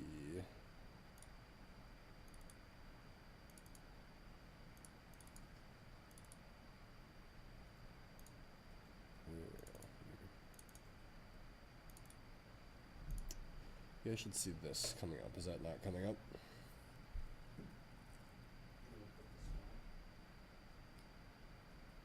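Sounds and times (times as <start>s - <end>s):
faint high whine: 0.0s - 22.0s
computer mouse clicks: 1.1s - 1.4s, 2.2s - 2.6s, 3.5s - 3.9s, 4.8s - 6.4s, 8.1s - 8.4s, 9.6s - 10.9s, 11.9s - 12.2s, 13.1s - 13.4s.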